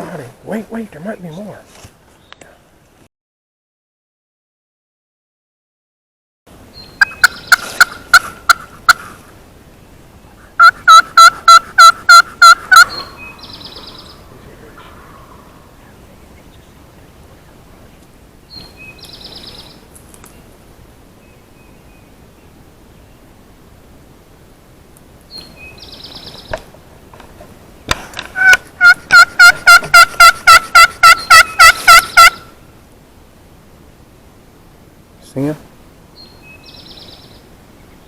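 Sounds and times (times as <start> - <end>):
turkey yelps: 10.6 - 13.2, 28.4 - 32.5.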